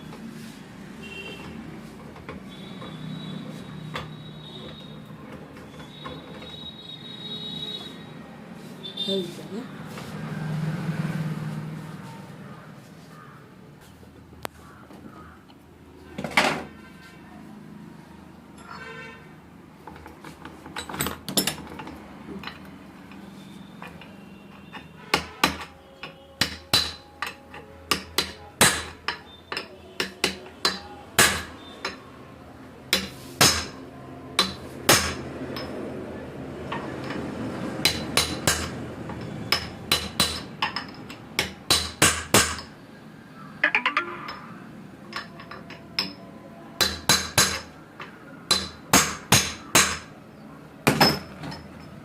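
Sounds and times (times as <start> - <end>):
hammer striking metal: 26.4 - 29.2, 43.6 - 46.2, 46.8 - 47.7.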